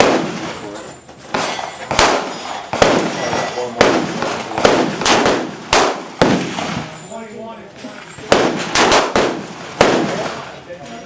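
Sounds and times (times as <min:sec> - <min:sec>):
gunshots with echo: 0:00.0 - 0:07.0, 0:08.2 - 0:10.6.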